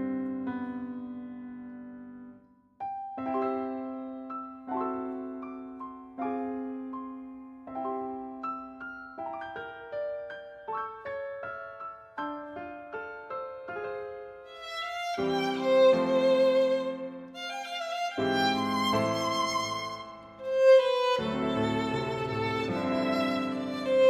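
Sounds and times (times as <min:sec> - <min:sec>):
piano notes: 0:00.0 - 0:24.0
violin melody with vibrato: 0:14.5 - 0:24.0.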